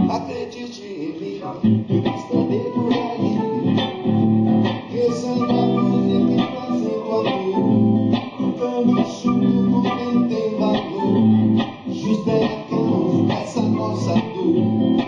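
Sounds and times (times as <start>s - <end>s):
live band playing guitar music: 0.0s - 0.5s, 1.5s - 15.0s.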